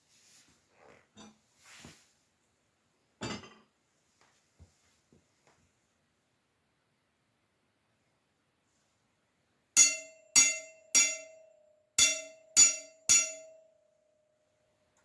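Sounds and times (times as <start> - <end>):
metal weapon struck ringing: 9.8 - 13.6.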